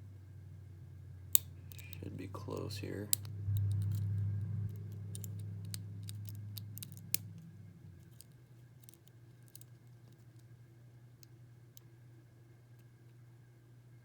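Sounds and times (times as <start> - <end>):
low hum: 0.0 - 14.0
lock pick clicking in padlock: 1.4 - 2.0, 3.1 - 7.3.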